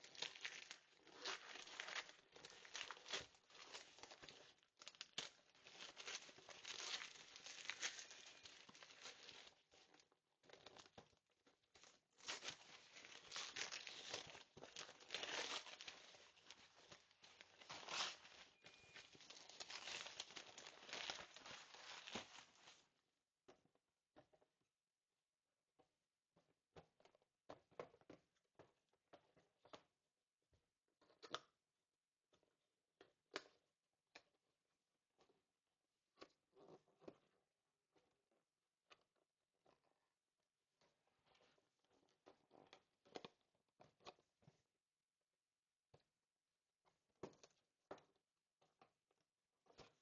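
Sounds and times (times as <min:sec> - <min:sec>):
packaging crinkling and tearing: 0:00.0 - 0:22.8.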